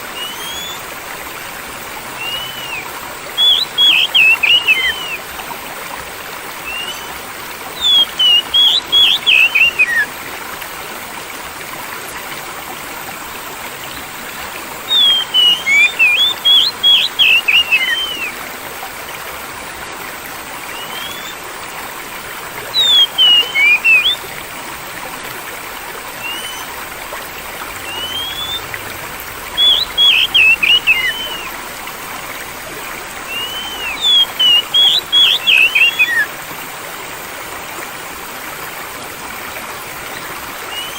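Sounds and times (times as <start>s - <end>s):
flowing water: 0.0s - 40.9s
bird singing whistled phrases: 0.2s - 0.8s, 2.2s - 5.2s, 6.6s - 7.2s, 7.8s - 10.1s, 14.9s - 18.4s, 20.7s - 21.4s, 22.7s - 24.2s, 26.2s - 26.7s, 27.8s - 28.7s, 29.6s - 31.5s, 33.3s - 36.3s, 40.7s - 40.9s.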